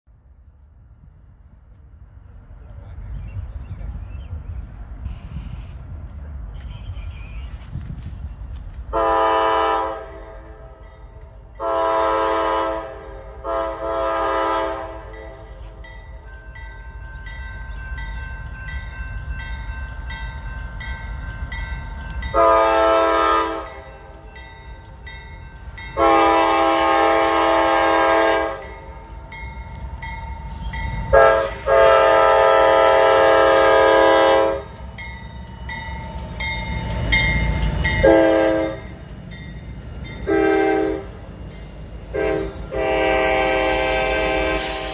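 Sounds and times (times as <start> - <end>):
low rumble of passing train: 0.1 - 44.9
locomotive air horn chord: 8.9 - 10.8, 11.6 - 15.6, 22.3 - 24.3, 26.0 - 28.9, 31.1 - 34.8, 38.0 - 39.0, 40.2 - 41.2, 42.1 - 44.9.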